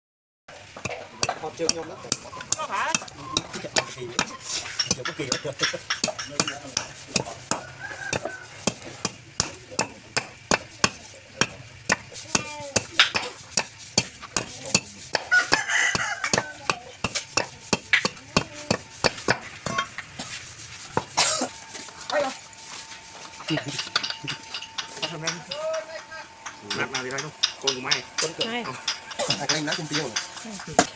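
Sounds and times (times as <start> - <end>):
metallic utensil tapping: 0.8 - 8.3, 23.4 - 30.9.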